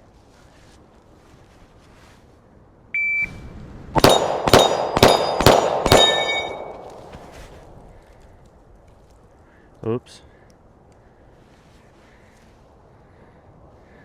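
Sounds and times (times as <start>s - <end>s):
shot timer beep: 3.0s - 3.4s
steel targets ringing: 4.0s - 6.9s
pistol shots: 4.0s - 7.0s.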